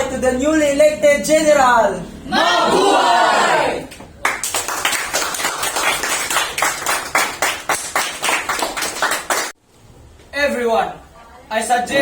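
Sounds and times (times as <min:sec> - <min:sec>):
people clapping: 0:03.9 - 0:09.6.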